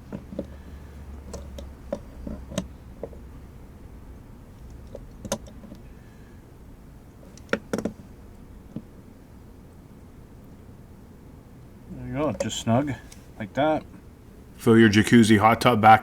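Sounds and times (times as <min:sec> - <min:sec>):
small clicks and knocks of fitting: 0:00.0 - 0:03.3, 0:04.5 - 0:06.0, 0:07.1 - 0:08.9
faint low hum: 0:00.0 - 0:16.0.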